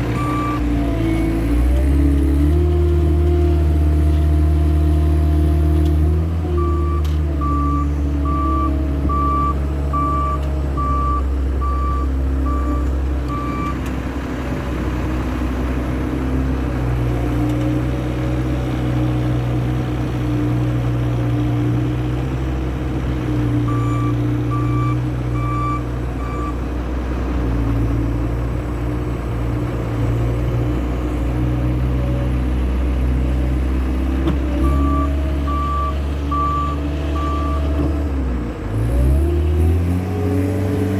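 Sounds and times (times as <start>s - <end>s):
diesel loader engine under load: 0.0s - 40.9s
back-up alarm beeping: 34.7s - 37.6s.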